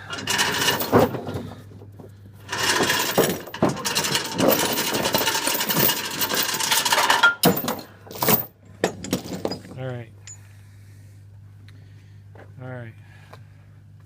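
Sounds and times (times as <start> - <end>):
rapid mechanical rattling: 0.0 - 1.3, 2.4 - 9.7.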